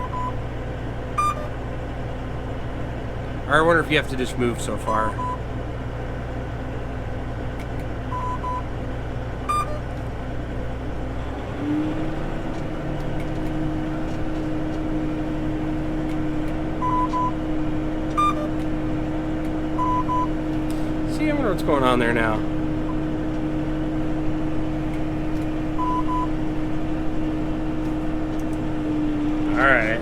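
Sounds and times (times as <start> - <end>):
short electronic beeps: 0.0 - 0.4, 1.2 - 1.6, 4.9 - 5.4, 8.1 - 8.6, 9.5 - 9.9, 16.8 - 17.4, 18.2 - 18.6, 19.8 - 20.4, 25.8 - 26.3
tractor engine running: 0.0 - 30.0.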